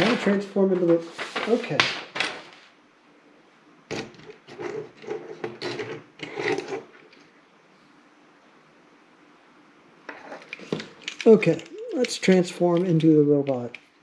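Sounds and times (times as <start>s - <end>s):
plastic toy parts clicking: 10.4s - 13.9s.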